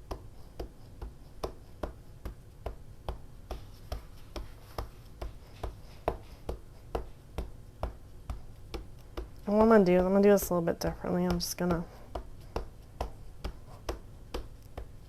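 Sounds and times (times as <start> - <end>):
light regular tapping: 0.0 - 15.0.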